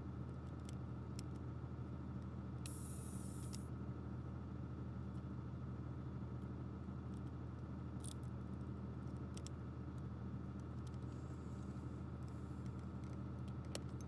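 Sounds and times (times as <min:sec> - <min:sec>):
steady electrical hum: 0:02.3 - 0:04.1.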